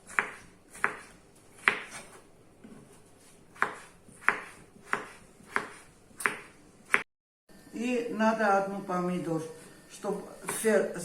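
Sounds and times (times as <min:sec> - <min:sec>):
knife chopping on cutting board: 0:00.0 - 0:02.8, 0:03.5 - 0:07.0.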